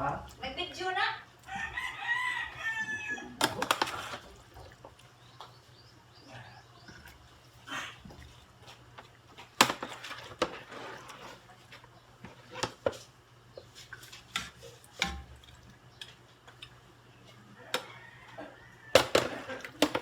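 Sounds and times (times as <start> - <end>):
cookware and utensils clinking: 3.4 - 4.2, 9.6 - 11.4, 17.7 - 20.0.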